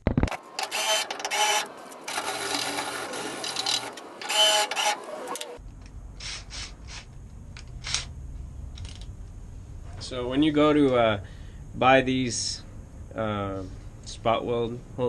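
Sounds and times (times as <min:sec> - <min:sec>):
electric drill grinding and whining: 0:00.6 - 0:05.6
low hum: 0:05.6 - 0:15.0.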